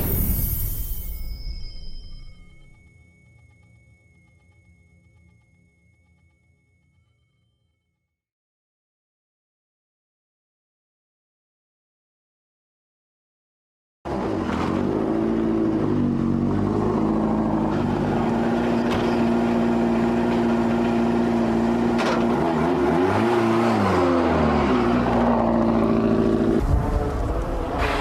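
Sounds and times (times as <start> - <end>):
rally car engine revving: 14.1 - 28.0.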